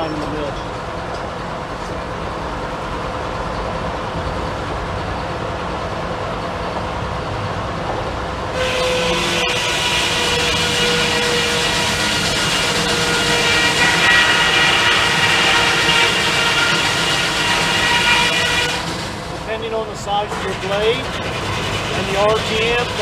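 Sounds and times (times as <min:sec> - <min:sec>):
sawmill engine running: 0:07.9 - 0:23.0
circular saw blade whine: 0:08.4 - 0:23.0.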